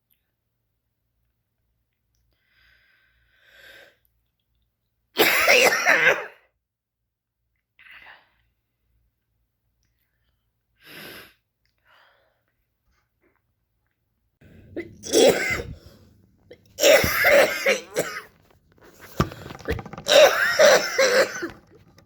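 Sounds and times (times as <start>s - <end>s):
woman coughing: 5.2s - 6.4s, 14.7s - 15.9s, 16.8s - 18.3s, 20.1s - 21.5s.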